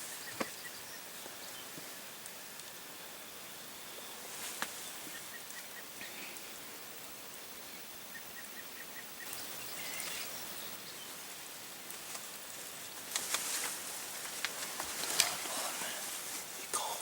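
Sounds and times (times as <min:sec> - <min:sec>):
steady woodland hiss: 0:00.0 - 0:17.0
clicks and rustles: 0:13.0 - 0:16.8.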